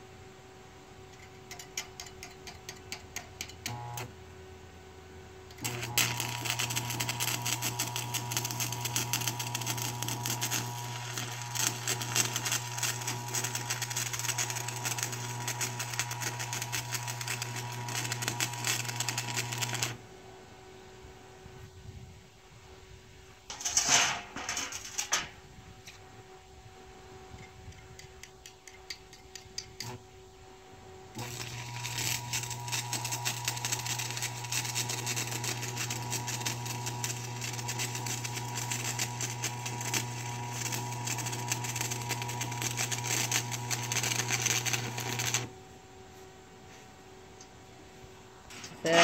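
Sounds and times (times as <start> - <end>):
steady electrical hum: 0.0 - 49.0
arc welder crackling: 1.2 - 4.1, 5.5 - 20.1, 23.5 - 25.3, 27.4 - 30.0, 31.1 - 45.6, 48.5 - 49.0.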